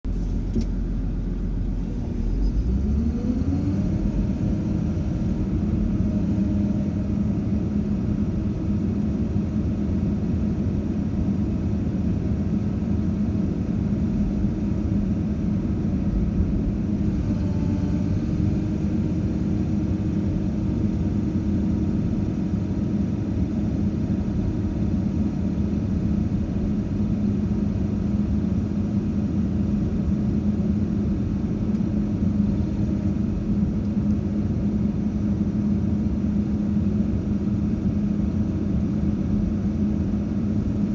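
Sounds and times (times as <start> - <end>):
heavy machine engine revving: 0.1 - 7.6, 16.9 - 22.3.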